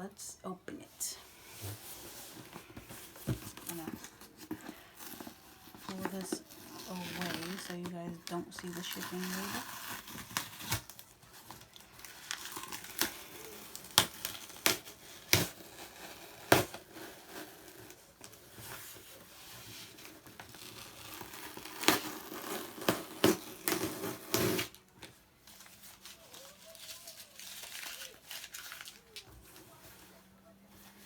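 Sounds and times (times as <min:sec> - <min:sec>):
paper and tape crinkling: 0:01.6 - 0:31.0
tape ripping: 0:03.2 - 0:18.0, 0:20.0 - 0:24.9, 0:25.5 - 0:29.3.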